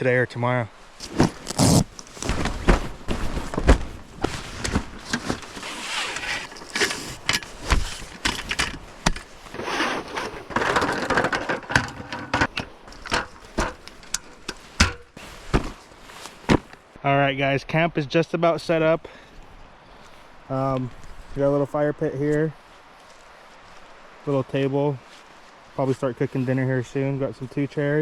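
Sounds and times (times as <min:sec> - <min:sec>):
rustling: 0:00.8 - 0:16.9
camping gear knocking and clattering: 0:01.0 - 0:16.9.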